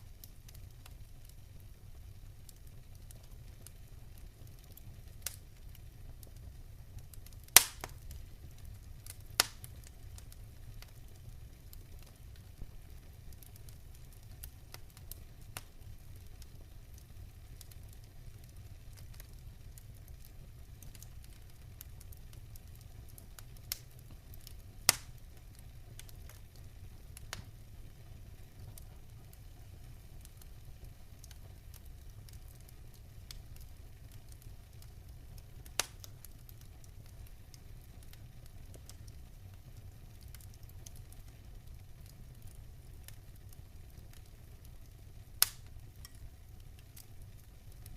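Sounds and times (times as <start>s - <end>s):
campfire crackling: 0.0s - 47.9s
fire popping loudly: 7.5s - 8.1s, 9.1s - 10.1s, 45.3s - 46.3s.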